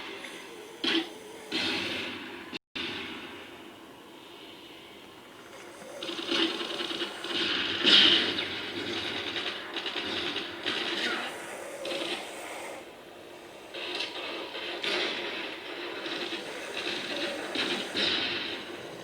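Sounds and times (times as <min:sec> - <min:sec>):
person snoring: 0:00.0 - 0:02.6, 0:05.3 - 0:19.0.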